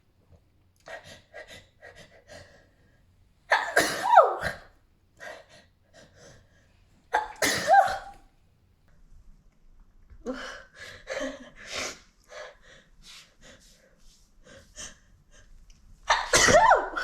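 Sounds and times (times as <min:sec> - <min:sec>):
woman sneezing: 0:03.5 - 0:04.7, 0:07.2 - 0:08.2, 0:16.1 - 0:17.0.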